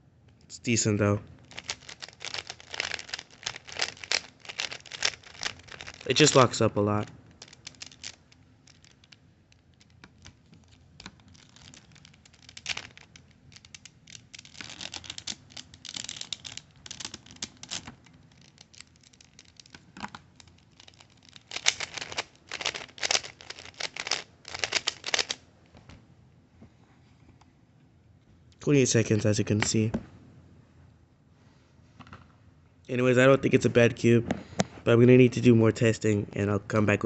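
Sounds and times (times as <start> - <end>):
rubik's cube clicking turns: 1.5 - 6.6, 7.3 - 25.4.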